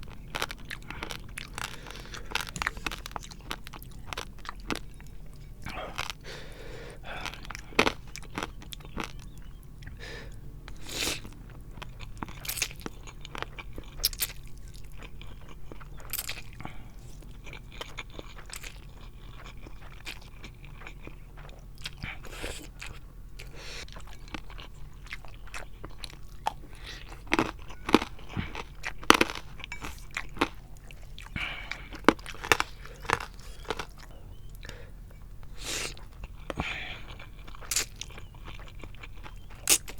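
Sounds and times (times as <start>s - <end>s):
chewing and biting: 0.0s - 39.9s
sharp crunches: 31.2s - 34.8s.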